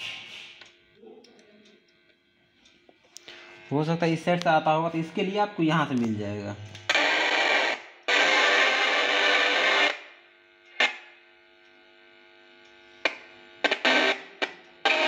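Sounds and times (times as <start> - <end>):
faint hum: 0.0 - 15.0
crackling bursts: 6.7 - 11.0, 13.0 - 15.0
distorted music from speaker: 6.8 - 10.0, 13.6 - 15.0.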